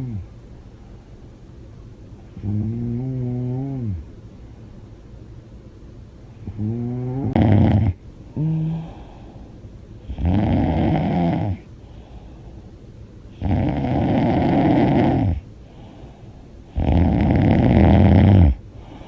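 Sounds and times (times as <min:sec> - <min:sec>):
woman snoring loudly: 0:06.5 - 0:08.9, 0:10.1 - 0:11.6, 0:13.4 - 0:15.4, 0:16.8 - 0:18.6
pitched breath sound: 0:08.3 - 0:09.6, 0:11.8 - 0:12.7, 0:15.6 - 0:16.6, 0:18.7 - 0:19.0.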